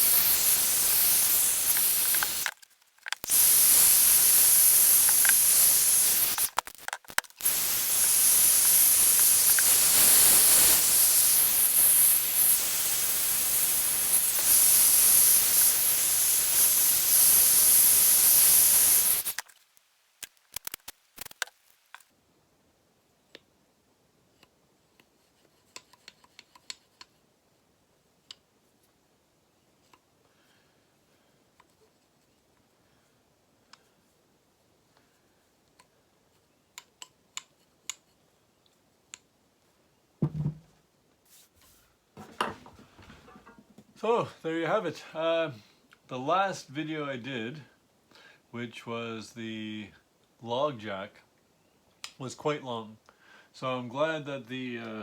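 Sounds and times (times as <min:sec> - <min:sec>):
aerosol spray paint hissing: 0:00.0 - 0:02.6, 0:03.2 - 0:19.4.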